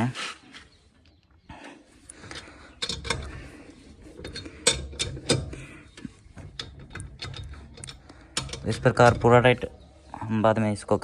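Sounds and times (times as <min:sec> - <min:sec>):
spanner clicking on wheel nuts: 0:02.2 - 0:03.5, 0:04.1 - 0:09.6.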